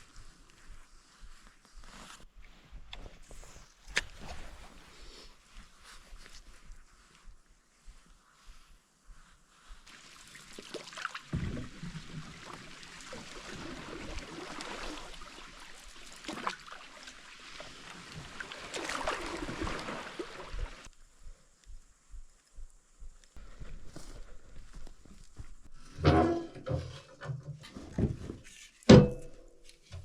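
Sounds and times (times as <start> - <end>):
oars splashing in water: 9.9 - 20.9
water trickling off oars: 9.9 - 20.9.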